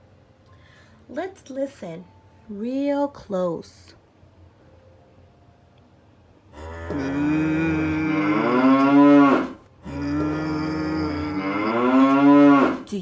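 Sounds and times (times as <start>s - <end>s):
cow mooing: 6.5s - 12.9s.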